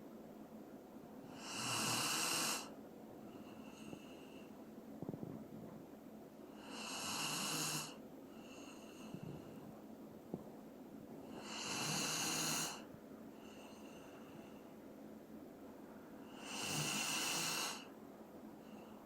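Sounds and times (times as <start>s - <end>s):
dog snoring: 1.3s - 2.7s, 6.6s - 9.5s, 11.3s - 12.9s, 16.3s - 17.9s.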